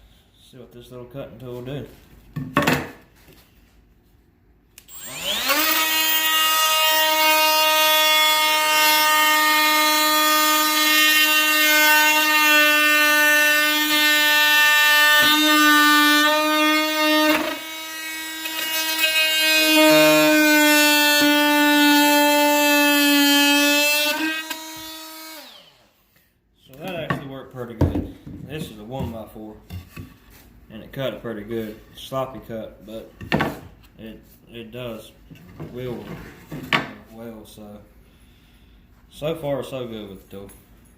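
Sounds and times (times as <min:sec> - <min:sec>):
oscillating multi-tool buzzing: 0:04.8 - 0:06.6.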